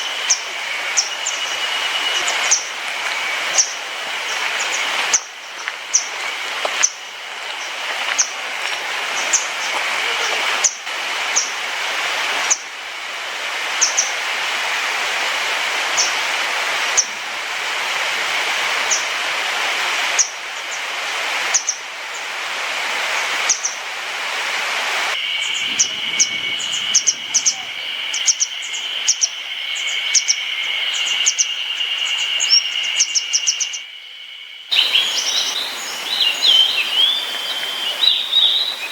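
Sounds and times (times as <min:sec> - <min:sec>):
songbirds calling: 0:00.0 - 0:11.7, 0:13.8 - 0:14.2, 0:15.9 - 0:16.2, 0:21.5 - 0:22.3, 0:23.5 - 0:23.8, 0:25.2 - 0:38.9
steady high hiss: 0:00.0 - 0:38.9.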